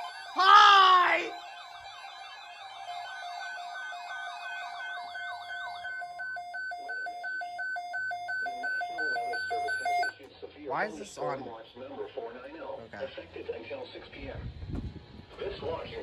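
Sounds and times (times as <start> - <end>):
warbling electronic siren: 0.0 - 10.1
electronic alert beeps: 3.1 - 10.1.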